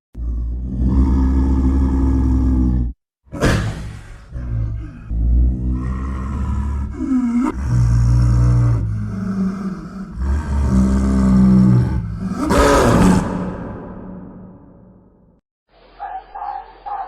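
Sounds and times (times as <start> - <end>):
large animal calling deeply: 4.2 - 14.2.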